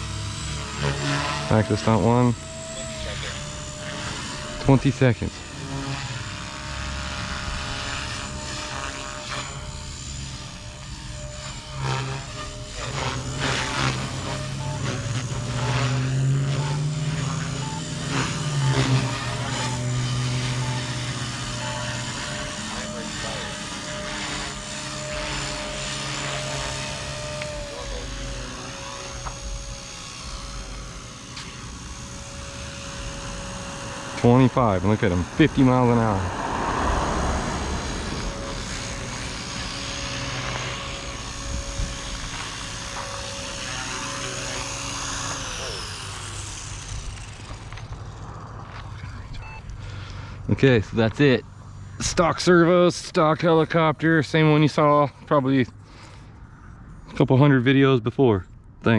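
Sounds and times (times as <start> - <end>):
helicopter motor and rotor hum: 0.0 - 58.9
rushing whooshes: 35.8 - 40.3.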